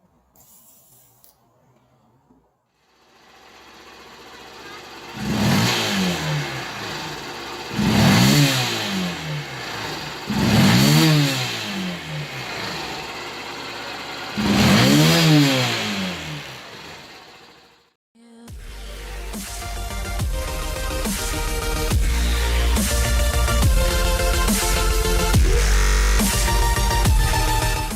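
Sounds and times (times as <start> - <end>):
motorcycle engine idling and revving: 2.8 - 27.9.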